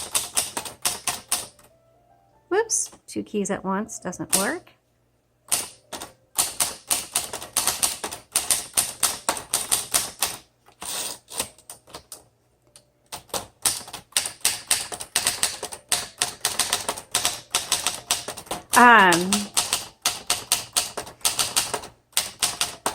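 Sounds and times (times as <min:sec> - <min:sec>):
manual typewriter key strikes: 0:00.0 - 0:01.7, 0:05.5 - 0:10.4, 0:13.1 - 0:22.9.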